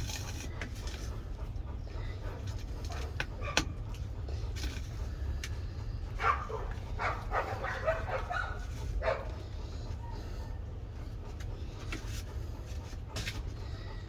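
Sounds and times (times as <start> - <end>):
steady low rumble: 0.0 - 14.0
dog barking and yipping: 2.8 - 3.9, 6.2 - 9.4.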